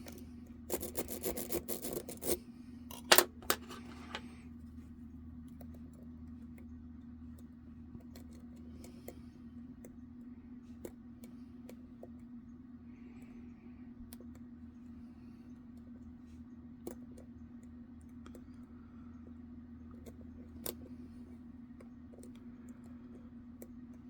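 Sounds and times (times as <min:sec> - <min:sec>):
steady low hum: 0:00.0 - 0:24.0
lock picks scraping and clicking: 0:00.7 - 0:04.2.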